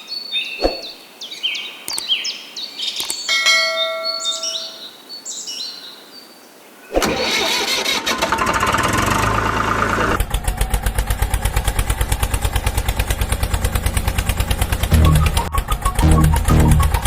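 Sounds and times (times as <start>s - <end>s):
motor chugging rhythmically: 12.0s - 17.0s.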